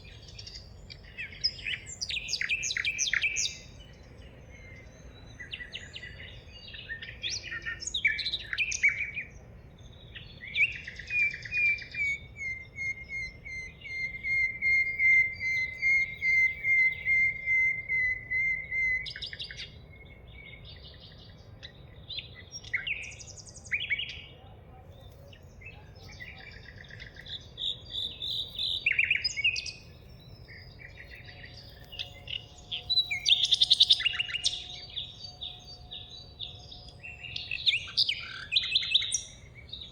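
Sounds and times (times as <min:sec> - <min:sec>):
wild birds singing and calling: 0:00.0 - 0:39.9.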